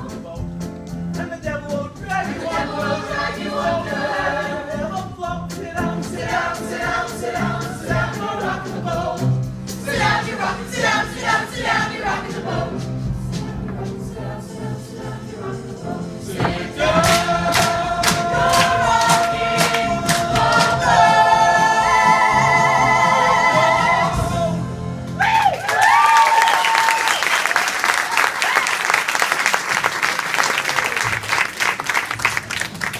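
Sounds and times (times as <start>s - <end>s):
ensemble singing show tune: 0.0s - 25.1s
audience applause and cheering: 25.1s - 32.9s
person whooping: 25.2s - 27.3s.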